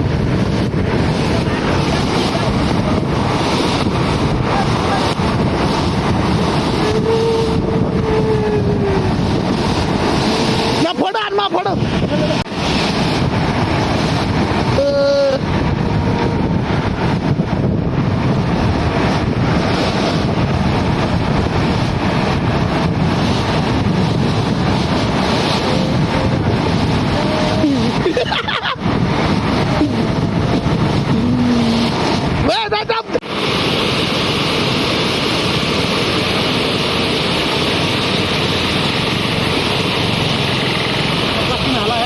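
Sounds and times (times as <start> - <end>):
waterfall roaring: 0.0 - 42.0
person calling out: 6.8 - 9.2, 27.1 - 28.1, 31.1 - 33.2.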